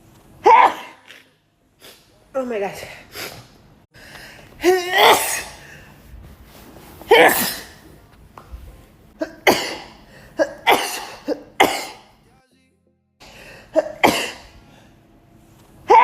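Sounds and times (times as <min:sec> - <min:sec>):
woman sneezing: 0:00.4 - 0:02.1, 0:04.6 - 0:05.7, 0:07.0 - 0:07.9, 0:09.2 - 0:12.1, 0:13.7 - 0:14.6.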